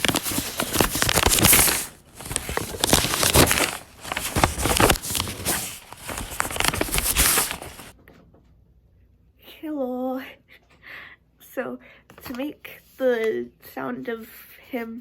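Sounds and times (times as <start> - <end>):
paper crumpling and rustling: 0.0 - 7.9.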